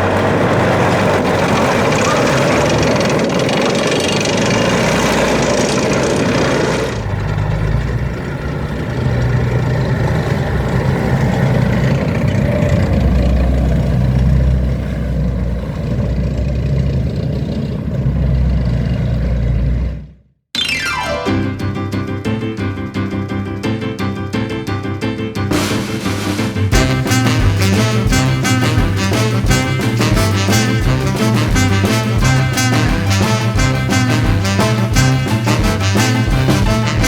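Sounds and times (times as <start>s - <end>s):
road or wind noise: 0.0s - 20.2s
vehicle engine droning: 0.0s - 20.2s, 25.5s - 37.0s.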